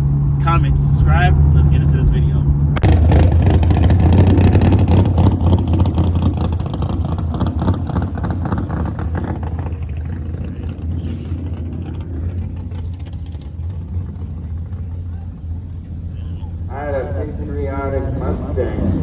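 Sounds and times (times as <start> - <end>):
car engine running loud: 0.0 - 19.0.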